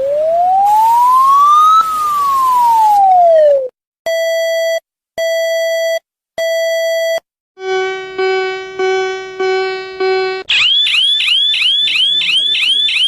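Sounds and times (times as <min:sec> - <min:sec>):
lower repeated alarm tone: 0:06.5 - 0:13.0
buzzy electronic alarm beeps: 0:07.6 - 0:13.0.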